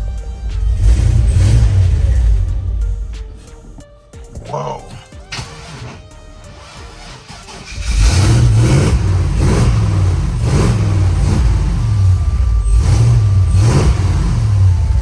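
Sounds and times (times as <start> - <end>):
car engine revving: 0.0 - 3.8, 5.2 - 15.0.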